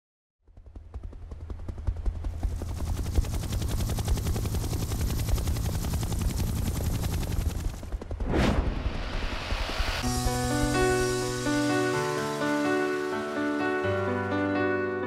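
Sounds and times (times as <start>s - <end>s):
helicopter rotor blades chopping: 0.4s - 8.3s.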